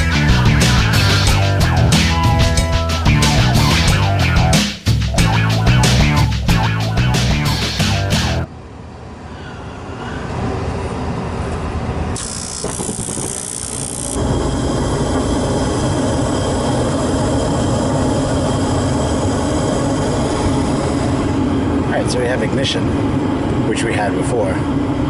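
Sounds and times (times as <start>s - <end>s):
heating unit mechanical hum: 8.4s - 25.0s
high hiss: 12.2s - 21.4s.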